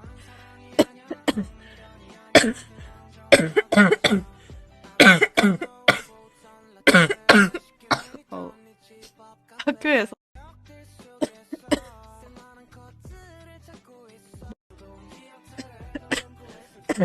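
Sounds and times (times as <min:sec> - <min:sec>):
faint background music: 0:00.0 - 0:17.0
girl coughing: 0:00.8 - 0:01.5, 0:02.4 - 0:02.7, 0:03.3 - 0:04.3, 0:05.0 - 0:06.1, 0:06.9 - 0:08.4, 0:16.0 - 0:16.3.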